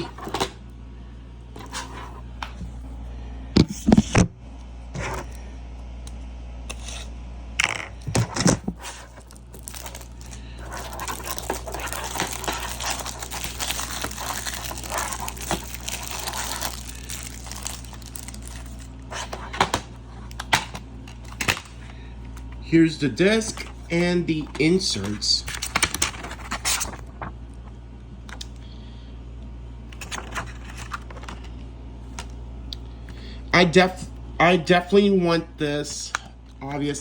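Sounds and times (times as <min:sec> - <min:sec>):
plastic wrapping tearing and crinkling: 0:08.2 - 0:21.8, 0:25.0 - 0:27.3.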